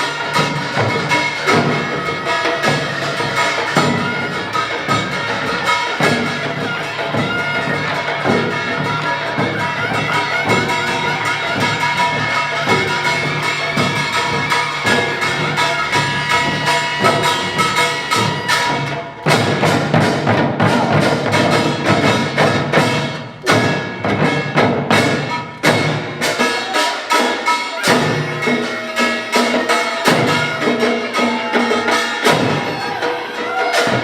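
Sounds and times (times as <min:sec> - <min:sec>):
metal gongs ringing: 0:00.0 - 0:19.7
drums playing fast rhythm: 0:00.0 - 0:34.0.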